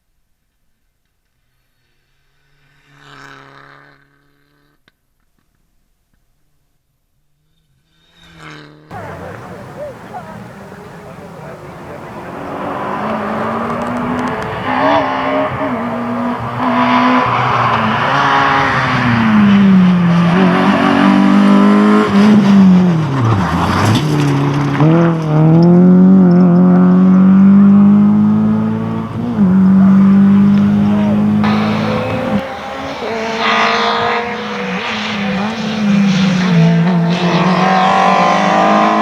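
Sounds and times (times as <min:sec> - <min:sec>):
rally car engine running hard: 0:08.9 - 0:39.0.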